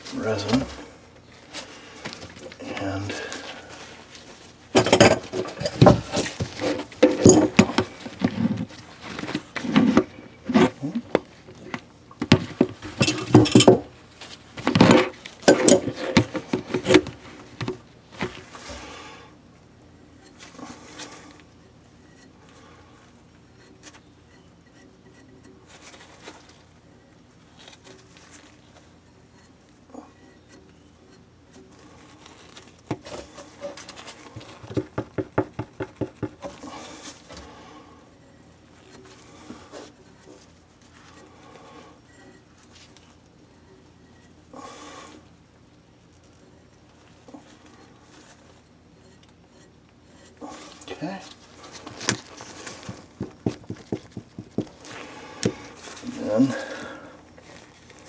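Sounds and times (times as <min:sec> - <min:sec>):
handling noises: 0:00.0 - 0:19.0, 0:32.0 - 0:37.6, 0:50.2 - 0:58.0
rubbing and scraping on a pipe: 0:00.0 - 0:19.0, 0:46.1 - 0:58.0.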